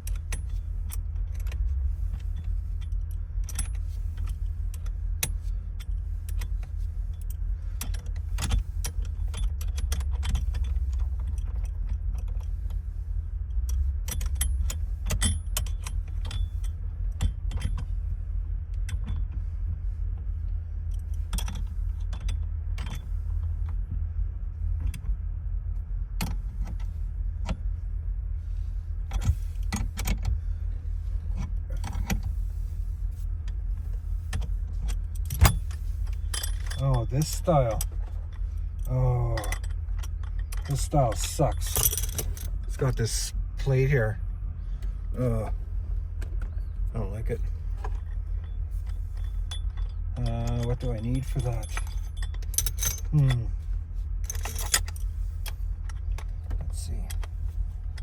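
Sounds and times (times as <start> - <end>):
steady low rumble: 0.0 - 58.0
metallic clinks of hand tools: 40.6 - 42.5, 49.1 - 53.5.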